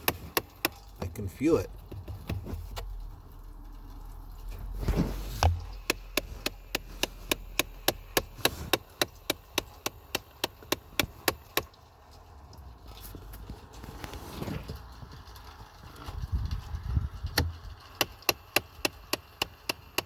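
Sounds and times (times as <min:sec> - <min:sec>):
sharp ticking behind dashboard: 0:00.0 - 0:03.7, 0:05.4 - 0:11.8, 0:17.4 - 0:20.0.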